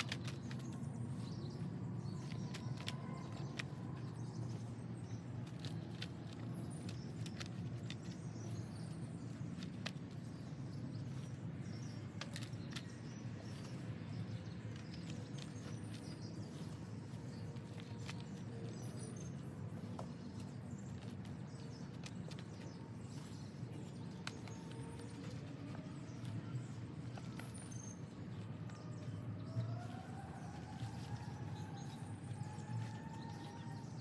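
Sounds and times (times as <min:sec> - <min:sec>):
small scattered clicks: 0:00.0 - 0:01.6, 0:11.1 - 0:29.0.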